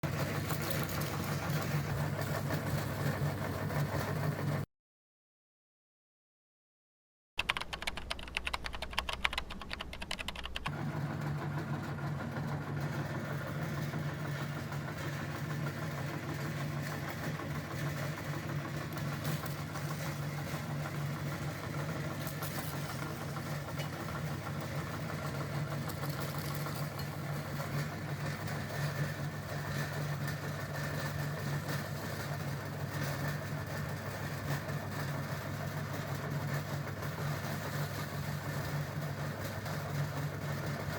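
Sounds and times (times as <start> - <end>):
meat grinder motor humming: 10.7 - 34.4
rapid clattering: 12.4 - 33.4.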